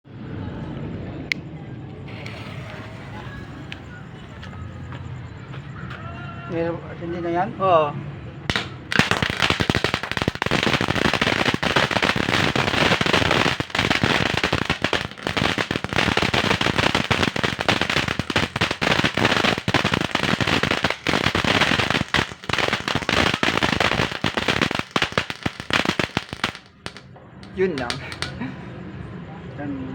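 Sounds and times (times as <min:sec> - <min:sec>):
fountain firework crackling: 0:02.1 - 0:04.8, 0:08.5 - 0:28.4.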